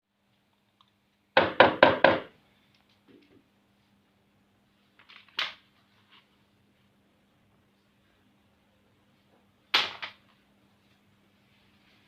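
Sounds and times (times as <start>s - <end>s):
loud knocks on hard surface: 1.4s - 2.3s.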